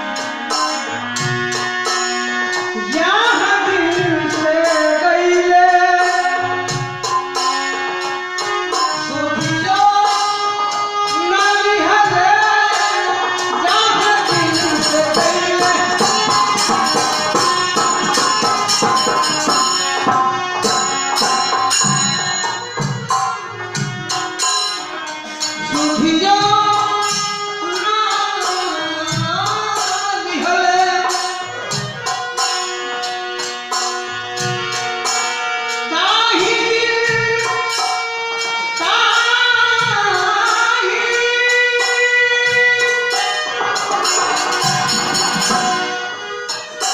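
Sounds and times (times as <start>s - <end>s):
hand drums: 0.0s - 46.9s
jingling percussion: 0.0s - 46.9s
gliding folk melody: 12.2s - 26.7s.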